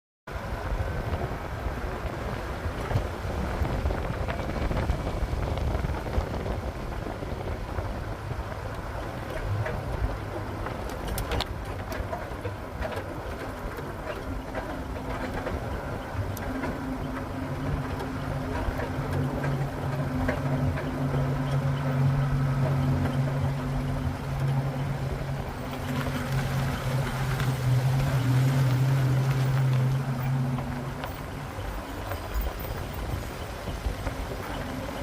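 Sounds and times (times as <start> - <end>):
vehicle driving rumble: 0.3 - 35.0
faint clicks: 8.7 - 24.7.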